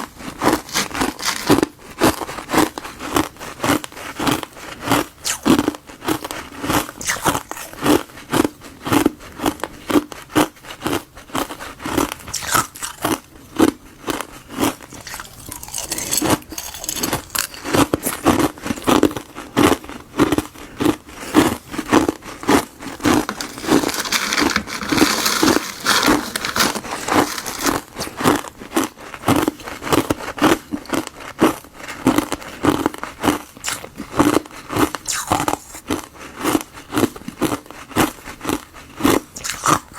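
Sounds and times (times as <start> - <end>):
person crunching ice: 0.2 - 3.4, 14.8 - 19.2, 20.8 - 31.6.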